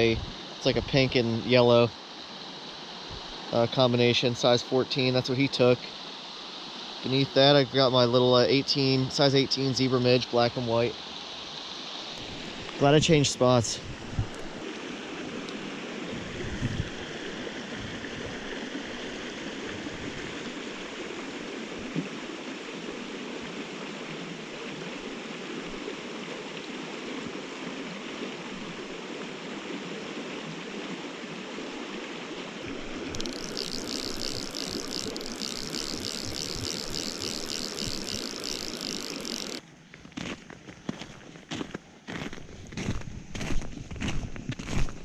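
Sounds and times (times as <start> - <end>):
creek water flowing: 0.0 - 42.6
fluttering high hiss: 32.7 - 39.6.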